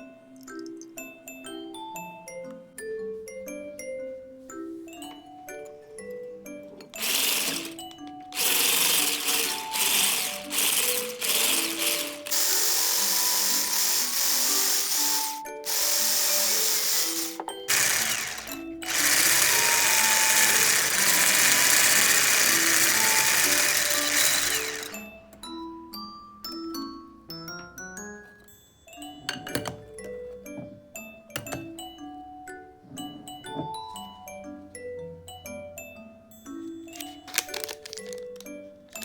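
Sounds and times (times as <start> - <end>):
electric hand mixer whirring: 7.0 - 25.2.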